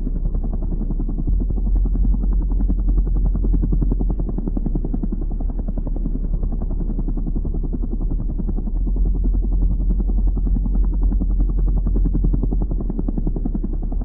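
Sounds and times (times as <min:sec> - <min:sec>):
background music with bass pulse: 0:00.0 - 0:14.0.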